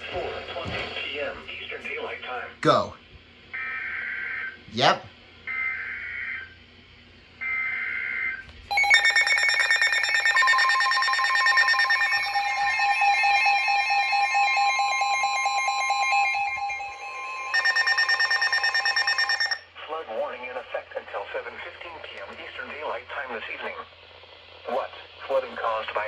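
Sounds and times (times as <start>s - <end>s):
fast pulsing beep: 8.7s - 19.6s
sharp beeping: 8.7s - 19.6s
steady alert tone: 8.7s - 19.6s
warbling data tones: 8.7s - 19.6s.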